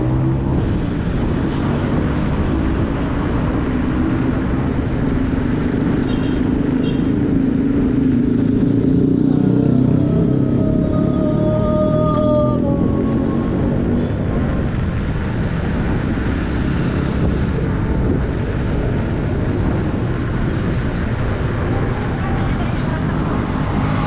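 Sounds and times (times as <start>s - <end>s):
vehicle engines passing: 0.0s - 24.0s
tyres rolling on road: 13.4s - 24.0s.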